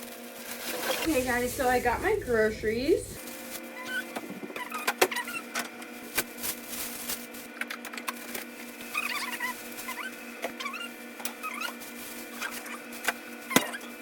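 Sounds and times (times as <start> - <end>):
groceries and packaging handled: 0.4 - 3.5, 6.0 - 10.9, 11.5 - 14.0
steady hum: 1.1 - 3.2.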